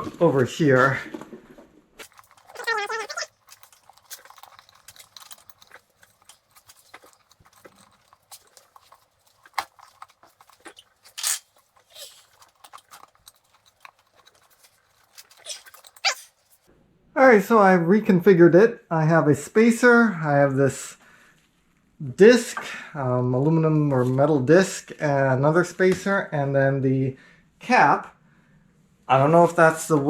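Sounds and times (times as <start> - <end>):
metal parts clicking and scraping: 2.0 - 16.7.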